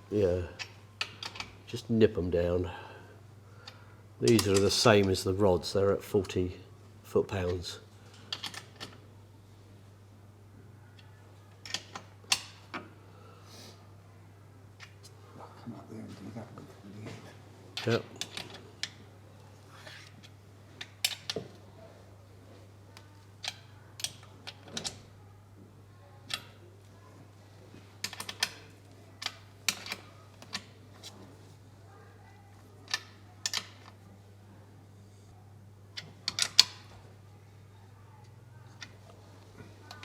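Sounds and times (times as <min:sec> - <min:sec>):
low workshop hum: 0:00.0 - 0:40.0.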